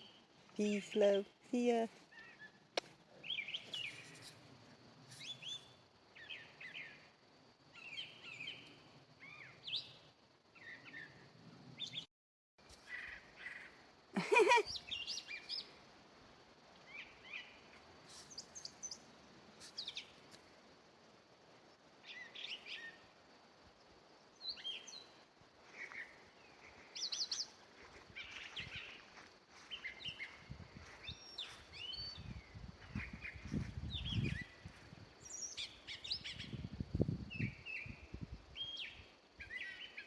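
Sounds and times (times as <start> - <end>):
songbird chirping and whistling: 3.2 - 4.2, 5.1 - 7.0, 14.3 - 15.7, 29.6 - 36.7, 38.6 - 40.0.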